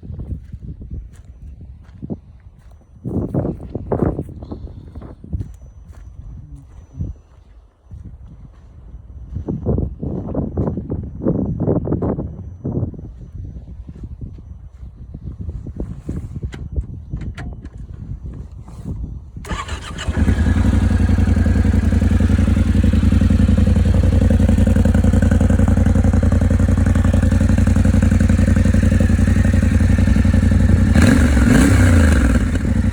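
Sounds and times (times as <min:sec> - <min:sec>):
motorcycle engine starting and idling: 0:19.4 - 0:32.9.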